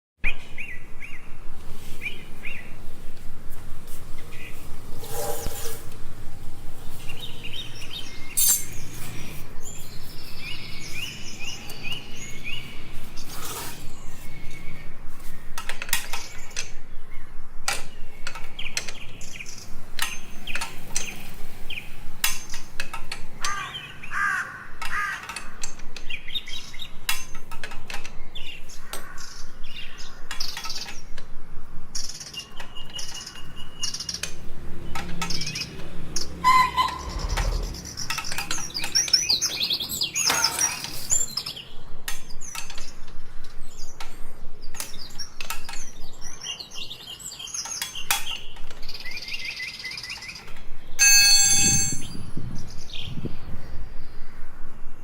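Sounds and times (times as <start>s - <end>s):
small birds chirping: 6.8s - 24.2s, 32.0s - 51.0s.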